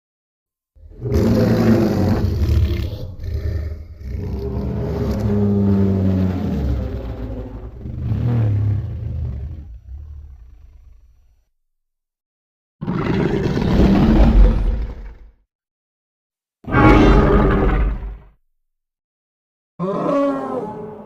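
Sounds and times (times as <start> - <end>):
monster roar: 0.8 - 11.1, 12.8 - 15.2, 16.7 - 18.3, 19.8 - 21.0.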